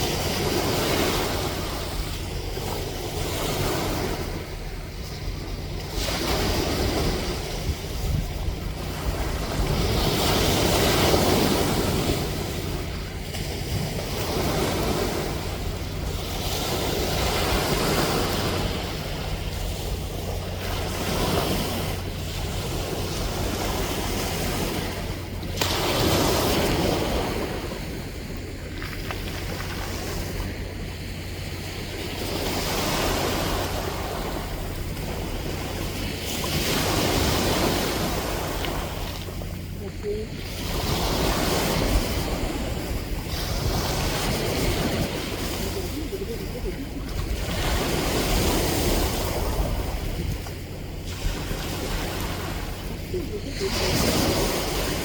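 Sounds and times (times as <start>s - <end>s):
low hum: 0.0s - 55.0s
sea waves breaking: 0.0s - 55.0s.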